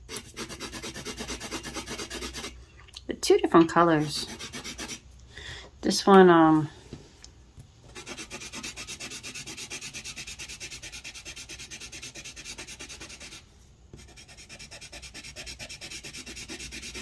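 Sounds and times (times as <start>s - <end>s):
pencil scribbling on paper: 0.1s - 2.5s, 4.0s - 5.0s, 7.9s - 13.4s, 14.0s - 17.0s.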